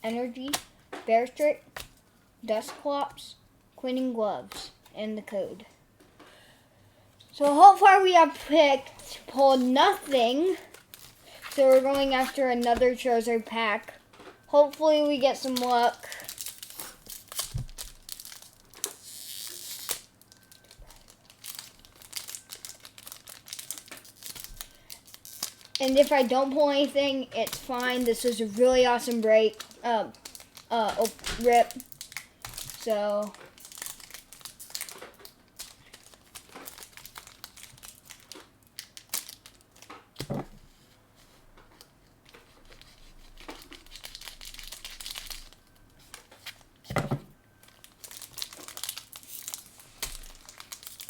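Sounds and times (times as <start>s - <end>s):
foil wrapper crinkling: 8.4s - 13.4s, 14.7s - 40.2s, 41.7s - 46.8s, 47.6s - 51.0s
foil wrapper tearing: 9.6s - 12.8s, 15.4s - 40.1s, 42.3s - 46.7s, 47.6s - 51.0s.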